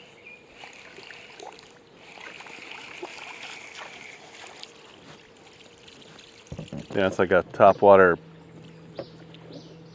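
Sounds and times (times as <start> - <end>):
water lapping against a boat: 0.0 - 9.8.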